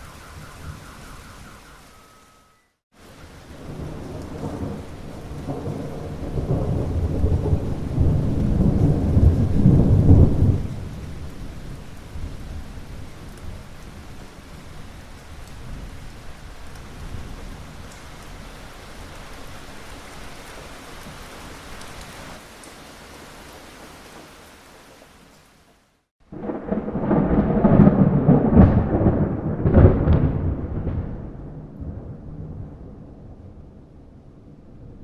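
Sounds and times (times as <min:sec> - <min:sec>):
thunder rumbling: 0:00.0 - 0:14.8, 0:26.3 - 0:35.0
steady rain: 0:00.0 - 0:35.0.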